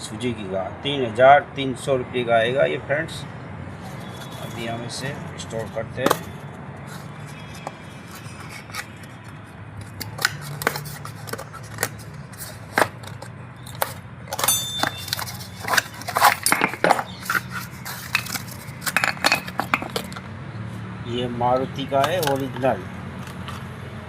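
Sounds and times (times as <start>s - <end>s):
metal parts clinking and scraping: 6.0s - 20.3s
metallic ring: 14.3s - 17.2s.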